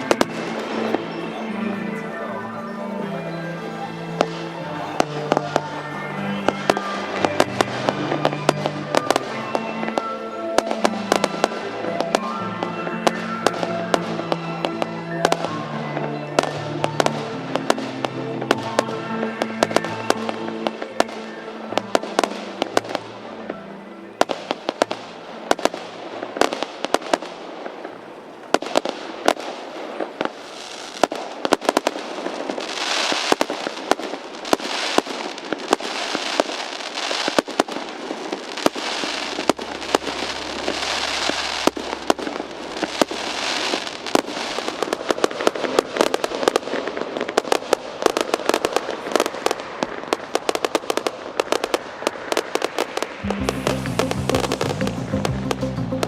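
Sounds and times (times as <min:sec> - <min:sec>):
music playing: 0:00.0 - 0:26.6, 0:38.0 - 0:46.8, 0:53.2 - 0:56.0
fireworks bangs and crackles: 0:00.0 - 0:56.0.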